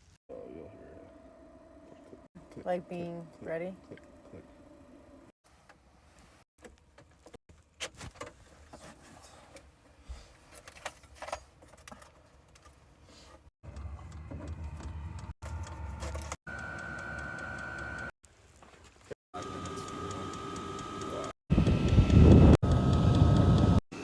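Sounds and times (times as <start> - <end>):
heater motor humming: 16.5 - 18.1, 19.4 - 24.0
high whine: 19.4 - 24.0.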